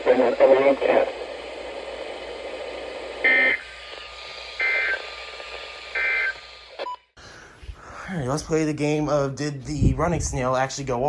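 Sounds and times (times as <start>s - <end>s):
radio receiver hissing: 0.0s - 6.9s.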